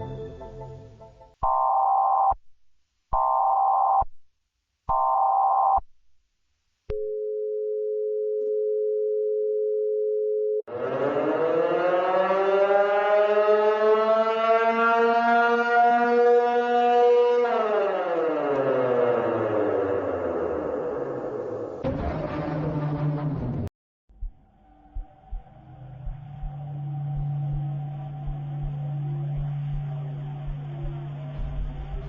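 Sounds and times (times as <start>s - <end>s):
telephone beeps: 1.4s - 2.4s, 3.2s - 4.1s, 4.9s - 5.8s
two-note dial tone: 4.9s - 5.8s, 6.9s - 10.6s
buzzy synthesized tone rising: 10.7s - 32.0s.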